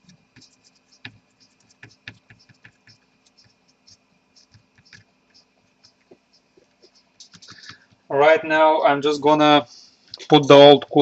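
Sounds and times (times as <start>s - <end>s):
scrubbing circuit board: 0.0s - 8.0s.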